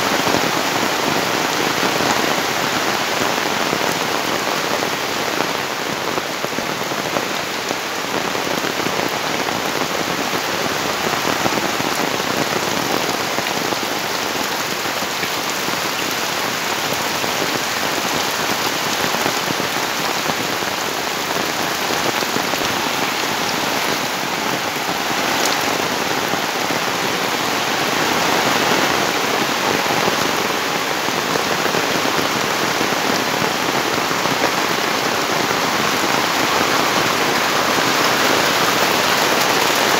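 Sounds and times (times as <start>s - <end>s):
heavy rain pattering: 0.0s - 39.9s.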